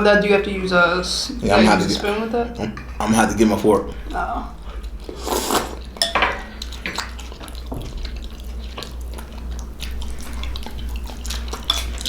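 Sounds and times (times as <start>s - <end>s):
wet eating noodles: 4.0s - 12.0s.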